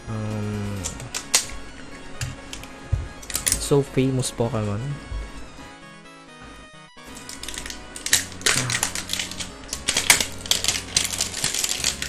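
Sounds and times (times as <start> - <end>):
background music: 0.0 - 12.0
plastic shrink-wrap crackling: 7.1 - 12.0.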